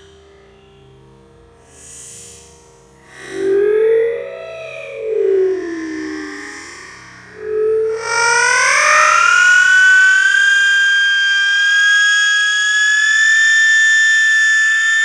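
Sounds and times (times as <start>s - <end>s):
slowed-down baby wail: 5.4s - 11.6s.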